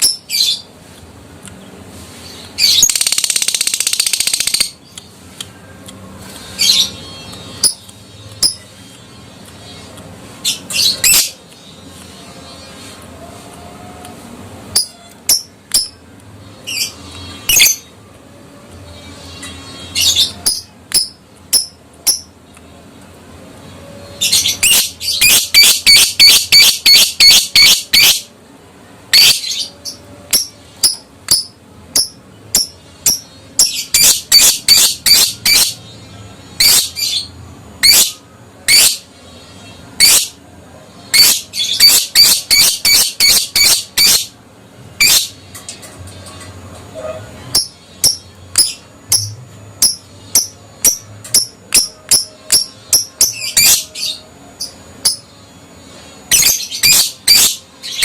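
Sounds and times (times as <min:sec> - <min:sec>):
lovebird shrill chirps: 0:24.3 - 0:28.2, 0:30.3 - 0:35.8, 0:41.1 - 0:44.3, 0:56.3 - 0:58.0.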